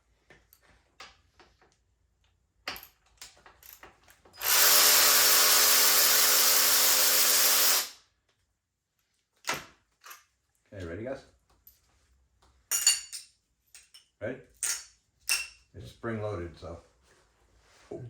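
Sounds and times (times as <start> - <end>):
power drill running: 4.4 - 8.0.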